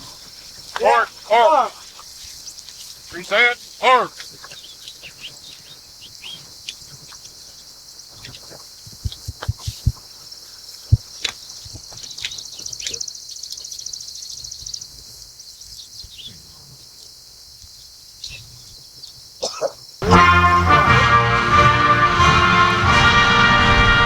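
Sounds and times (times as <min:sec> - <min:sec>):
birds chirping: 0:00.0 - 0:06.8, 0:20.0 - 0:22.1.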